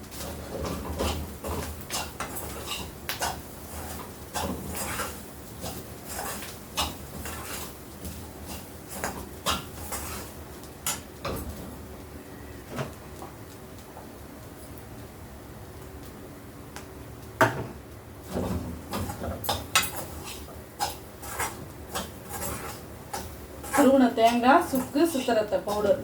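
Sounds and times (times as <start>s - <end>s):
spoon scraping a pan: 0.2s - 11.1s, 18.4s - 26.0s.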